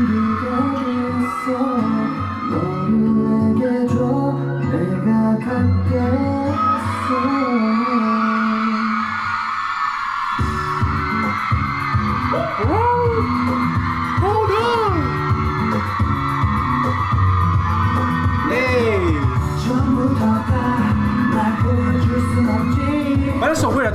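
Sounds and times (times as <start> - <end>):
person singing: 0.0 - 9.1, 12.4 - 13.4, 14.2 - 15.1, 18.4 - 23.7
live pop music: 0.0 - 23.9
band with guitar and bass: 10.4 - 23.9
men singing: 18.5 - 23.7.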